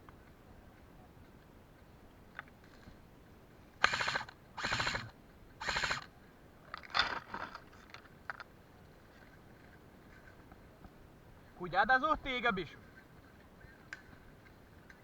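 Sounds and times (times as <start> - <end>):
airsoft gun firing bursts: 3.8 - 6.1.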